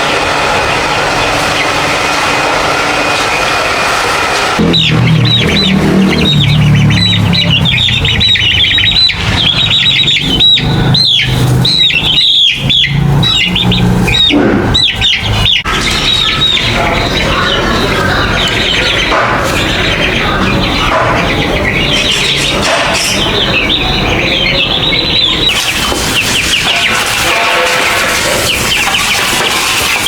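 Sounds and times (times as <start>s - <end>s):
chicks peeping: 0.0s - 30.0s.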